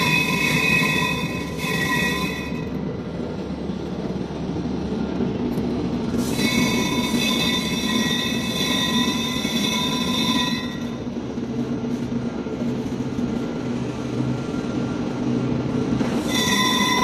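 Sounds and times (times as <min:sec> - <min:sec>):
high-pitched squeal: 0:00.0 - 0:02.8, 0:06.2 - 0:11.0, 0:16.2 - 0:17.0.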